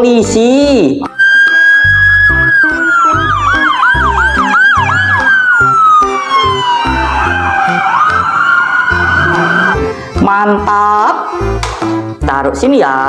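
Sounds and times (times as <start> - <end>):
police siren wail and yelp: 1.2 - 9.9.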